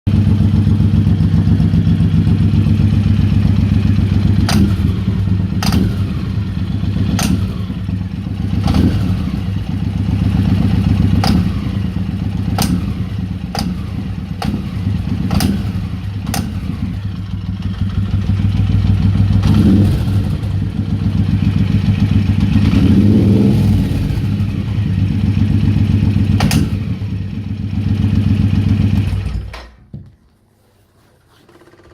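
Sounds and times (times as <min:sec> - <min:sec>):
motorcycle engine running: 0:00.1 - 0:29.5
sharp engine knocks: 0:04.4 - 0:06.2, 0:07.0 - 0:07.8, 0:11.1 - 0:11.9, 0:12.5 - 0:17.0, 0:26.3 - 0:27.0.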